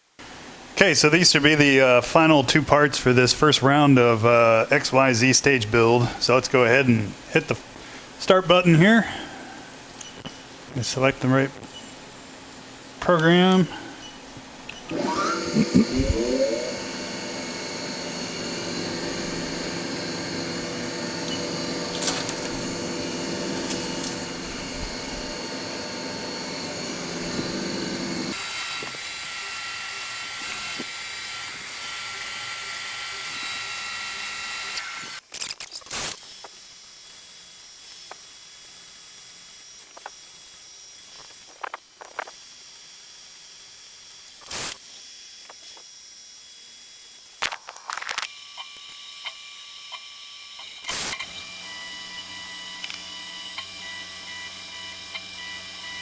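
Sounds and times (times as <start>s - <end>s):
machine whine with held tones: 14.8s - 28.7s, 48.3s - 56.0s
cnc machining noise: 14.8s - 35.2s, 48.6s - 56.0s.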